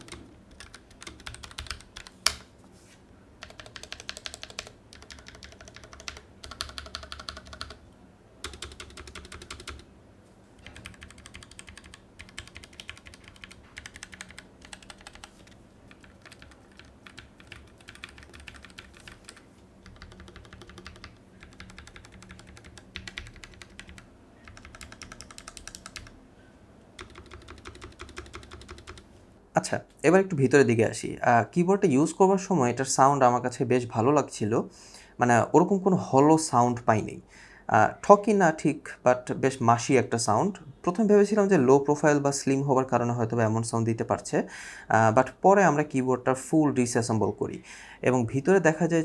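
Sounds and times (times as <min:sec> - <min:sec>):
mechanical keyboard typing: 0:00.0 - 0:02.4, 0:03.4 - 0:07.8, 0:08.4 - 0:09.8, 0:10.6 - 0:26.2, 0:27.0 - 0:29.0.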